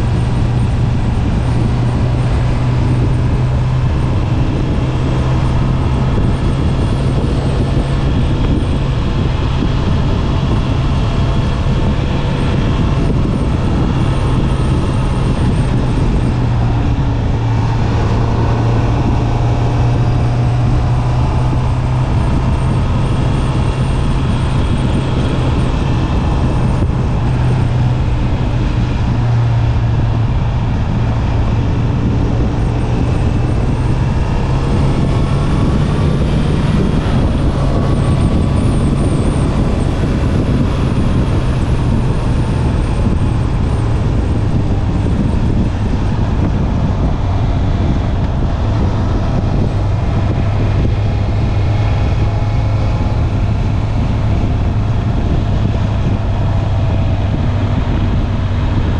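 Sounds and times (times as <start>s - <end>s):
motorcycle engine cruising: 0.0s - 58.9s
road and wind noise: 0.0s - 58.9s.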